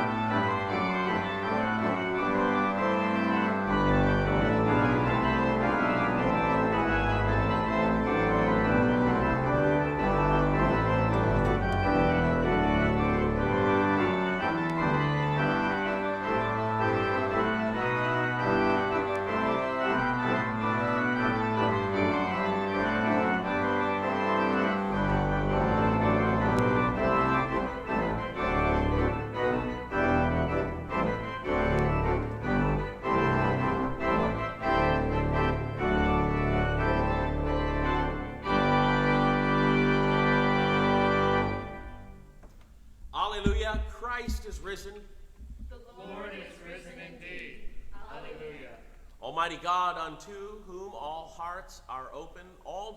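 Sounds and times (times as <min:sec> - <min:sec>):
church organ chords: 0:00.0 - 0:44.9.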